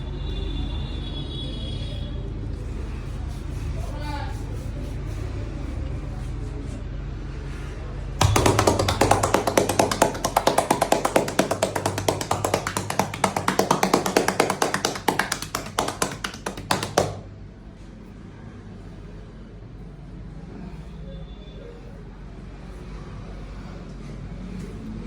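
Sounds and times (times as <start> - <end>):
hands rapidly tapping on body: 8.2 - 17.3.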